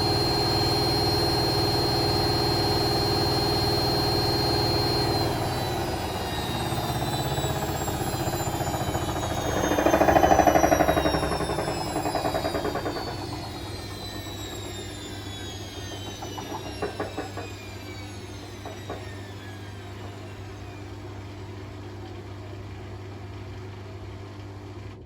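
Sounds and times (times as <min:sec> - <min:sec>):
washing machine drum spinning down: 0:00.0 - 0:25.0
knocks and rattles: 0:08.6 - 0:14.5, 0:15.8 - 0:17.6.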